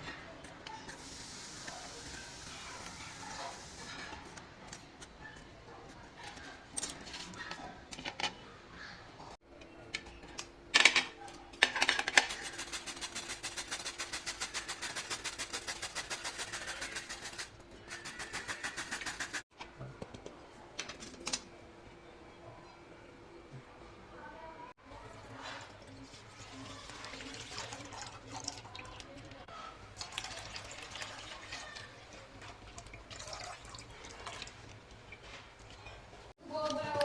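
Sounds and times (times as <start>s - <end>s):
fast rhythmic scraping: 12.2s - 19.5s.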